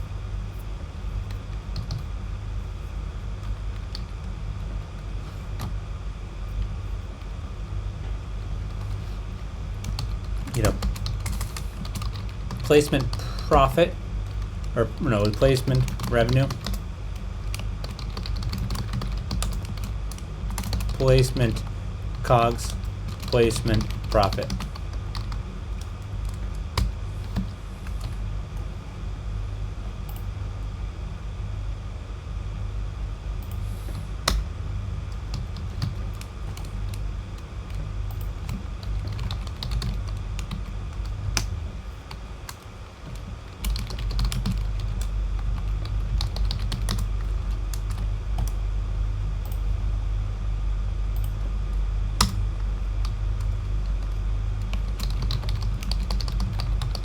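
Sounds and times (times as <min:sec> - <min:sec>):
low hum: 0:00.0 - 0:57.0
computer keyboard typing: 0:01.1 - 0:02.1, 0:03.4 - 0:04.3, 0:08.5 - 0:28.2, 0:35.1 - 0:48.6, 0:52.2 - 0:57.0.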